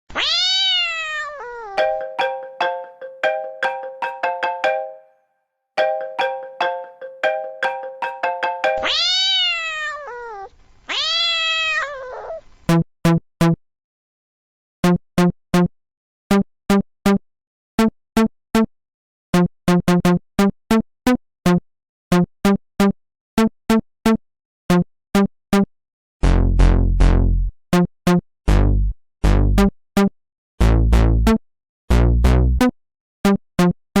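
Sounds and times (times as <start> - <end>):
electronic ringtone tune: 1.8 - 5.2, 5.8 - 8.9.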